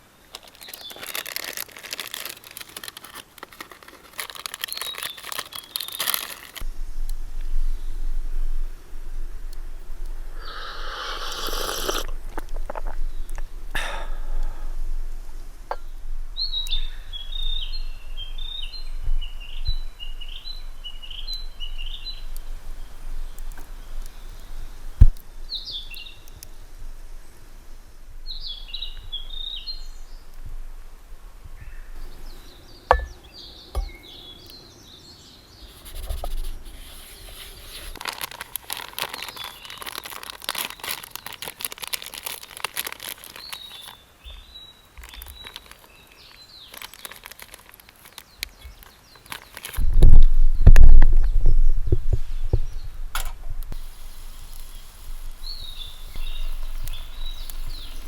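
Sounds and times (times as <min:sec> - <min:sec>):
handling rustling: 0:00.3 - 0:06.7, 0:35.7 - 0:49.9
songbird twittering: 0:15.7 - 0:26.7, 0:28.2 - 0:30.3, 0:31.6 - 0:36.0, 0:53.8 - 0:58.0
handling knocks: 0:32.9 - 0:34.0.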